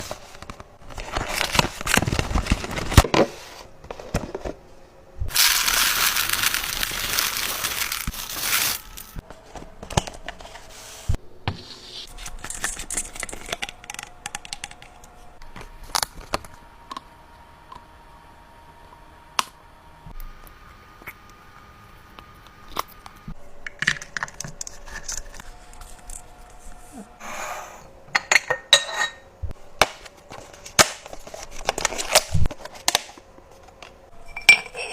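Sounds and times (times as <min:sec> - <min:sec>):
packaging crinkling: 0:05.3 - 0:09.2.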